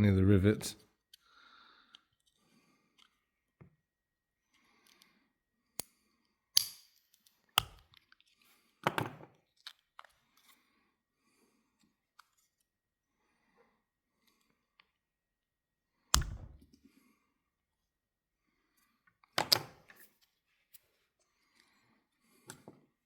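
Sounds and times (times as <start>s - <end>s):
knife blade clicking and scraping: 6.6s - 7.0s.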